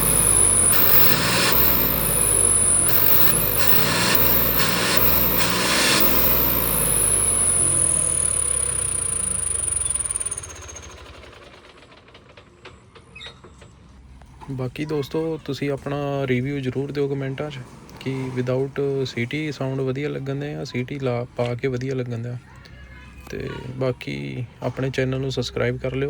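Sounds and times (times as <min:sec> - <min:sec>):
exhaust whistle hiss: 0:00.0 - 0:11.5.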